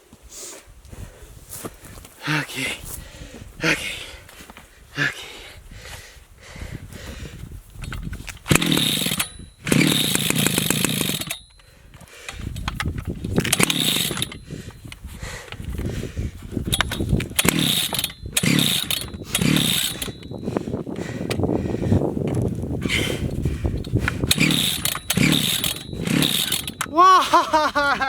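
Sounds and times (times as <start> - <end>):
starter rope yanks: 7.7 - 28.0
chainsaw engine turning over: 7.8 - 21.4, 22.2 - 28.0.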